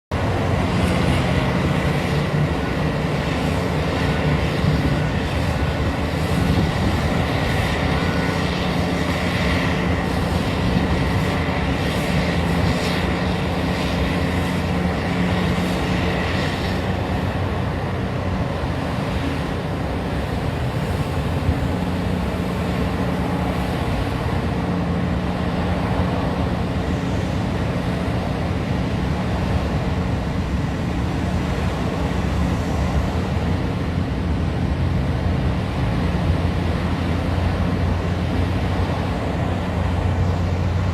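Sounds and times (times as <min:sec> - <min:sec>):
diesel engine under load: 0:00.1 - 0:40.9.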